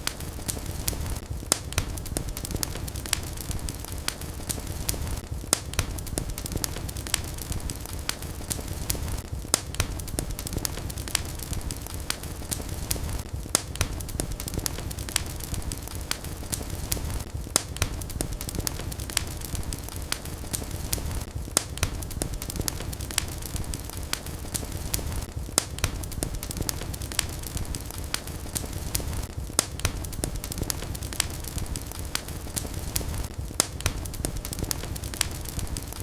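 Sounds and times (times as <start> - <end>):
fire popping and crackling: 0.0 - 36.0
low rumble of flames: 0.0 - 36.0.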